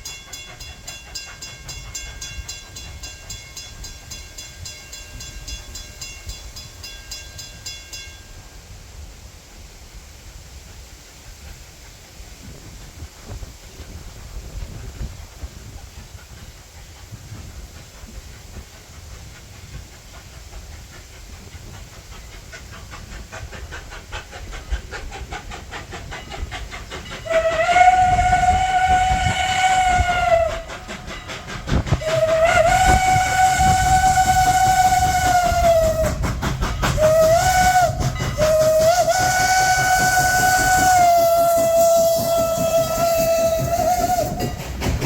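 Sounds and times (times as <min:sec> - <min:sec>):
locomotive exhaust chuffing: 0:11.0 - 0:45.0
steam whistle blasts: 0:27.2 - 0:30.9, 0:32.0 - 0:36.2, 0:37.0 - 0:44.5.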